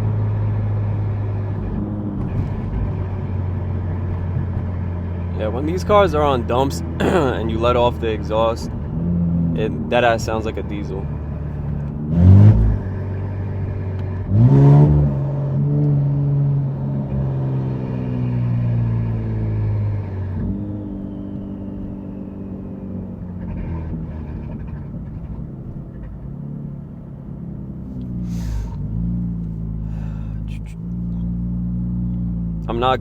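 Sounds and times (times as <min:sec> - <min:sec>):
car engine revving: 0:00.0 - 0:33.0
engine drone from inside cabin: 0:26.9 - 0:33.0.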